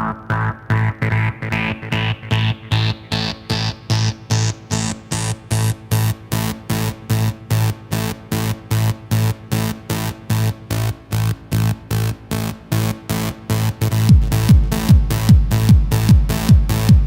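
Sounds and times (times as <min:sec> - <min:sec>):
synthesizer chord stabs: 0:00.0 - 0:17.0
kick drum: 0:14.1 - 0:17.0.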